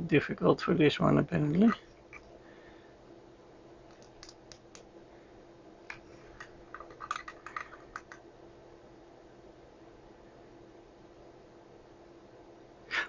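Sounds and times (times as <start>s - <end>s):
faint steady hum: 0.0s - 13.0s
small clicks and taps of equipment: 3.9s - 4.9s.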